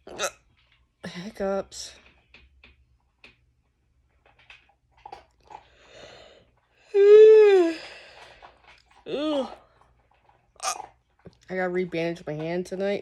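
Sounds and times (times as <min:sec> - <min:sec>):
pet crunching food: 0:04.1 - 0:05.9, 0:08.2 - 0:11.6.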